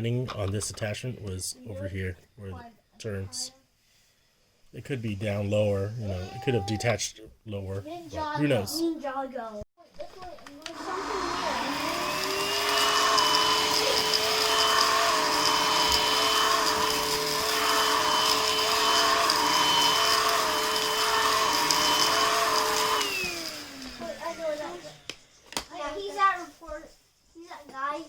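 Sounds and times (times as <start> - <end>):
stick vacuum motor whine: 10.5 - 25.6.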